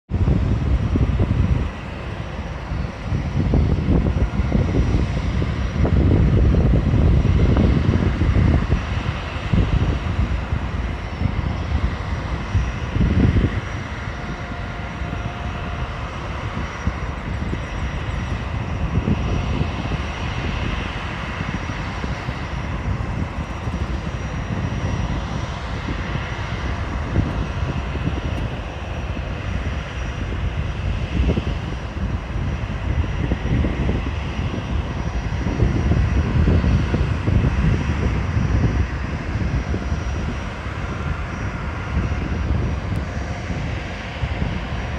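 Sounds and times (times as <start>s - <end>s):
high engine whine: 0.1s - 44.9s
jet engines roaring: 0.1s - 44.9s.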